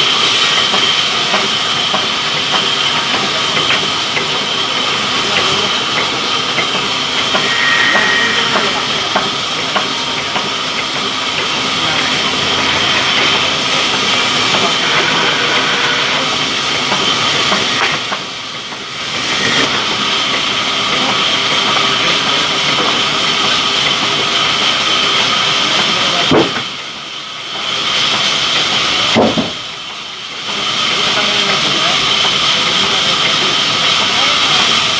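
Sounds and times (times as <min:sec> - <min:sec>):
saw cutting through log: 0:07.0 - 0:10.3, 0:11.7 - 0:18.3.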